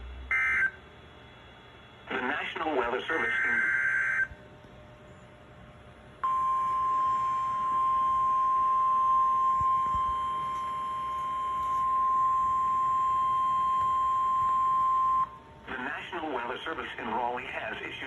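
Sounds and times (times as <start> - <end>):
steady high alarm tone: 0.3 - 18.0.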